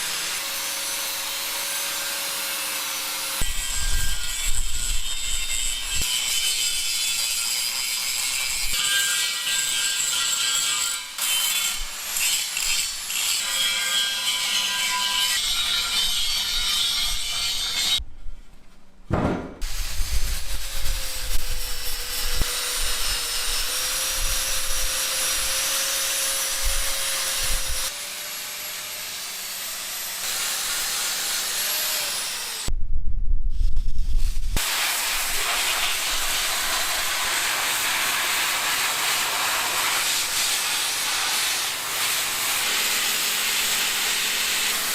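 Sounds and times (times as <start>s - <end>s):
power tool grinding whine: 19.6s - 32.7s.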